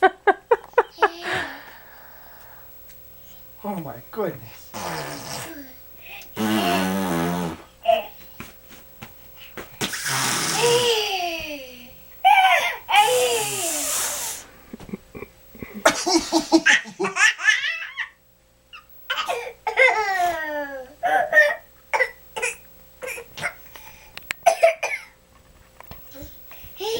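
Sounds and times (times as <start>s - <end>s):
baby belly laughing: 6.4s - 7.0s, 9.9s - 11.7s
fake coughs: 24.4s - 25.2s.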